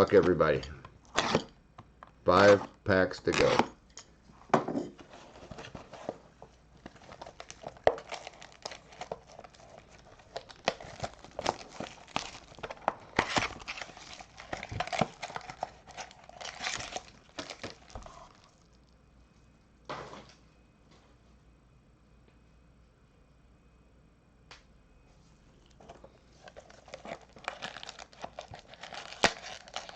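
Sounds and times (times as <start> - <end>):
cards crackling and clicking: 2.3 - 3.7, 6.8 - 18.1, 26.4 - 29.9
wrapper tearing and crinkling: 6.8 - 18.7, 26.4 - 29.9.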